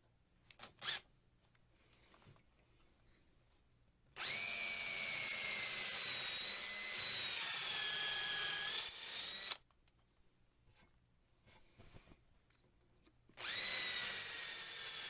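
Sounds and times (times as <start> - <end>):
electric drill boring into wood: 4.2 - 9.6, 13.4 - 15.0.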